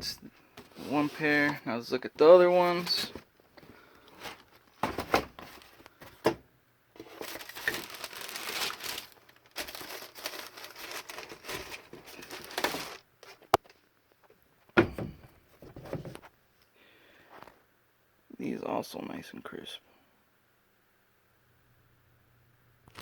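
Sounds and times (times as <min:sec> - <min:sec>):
packaging crinkling and rustling: 0:00.6 - 0:06.4, 0:07.0 - 0:13.9.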